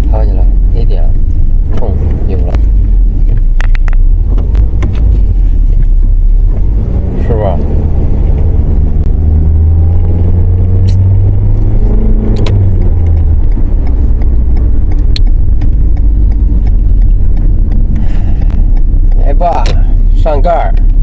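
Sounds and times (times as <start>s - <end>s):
car engine hum: 0.0s - 21.0s
road rumble: 0.0s - 21.0s.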